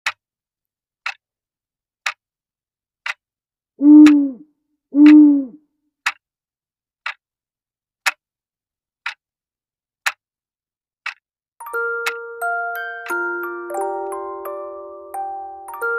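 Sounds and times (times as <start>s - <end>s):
owl hooting: 3.8s - 4.4s
clock ticking: 3.9s - 4.4s, 5.0s - 6.2s, 11.0s - 15.9s.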